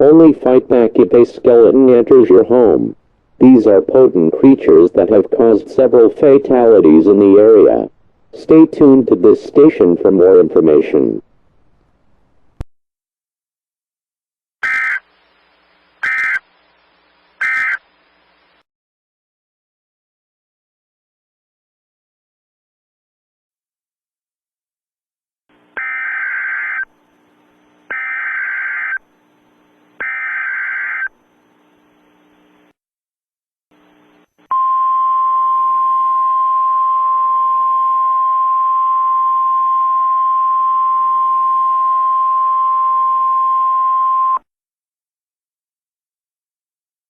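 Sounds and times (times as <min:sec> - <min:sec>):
radio hiss: 0:14.6 - 0:18.6, 0:25.6 - 0:32.7, 0:33.8 - 0:34.5
warbling data tones: 0:27.9 - 0:29.0.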